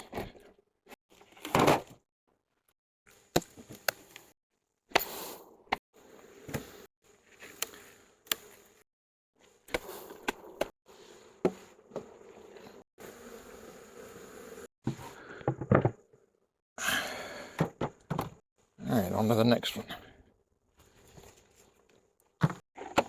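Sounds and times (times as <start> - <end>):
honeybees buzzing: 12.6 - 14.7.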